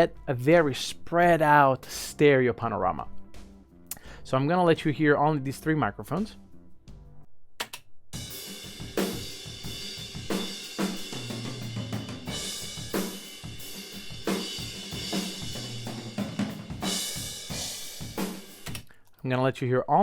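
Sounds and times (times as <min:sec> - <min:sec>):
drum kit playing groove: 0:03.3 - 0:04.2, 0:08.2 - 0:18.8.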